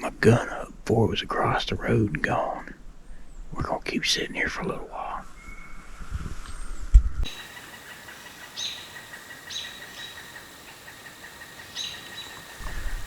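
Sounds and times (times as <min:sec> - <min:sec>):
faint steady hiss: 0:00.0 - 0:13.0
bird calling: 0:07.3 - 0:13.0.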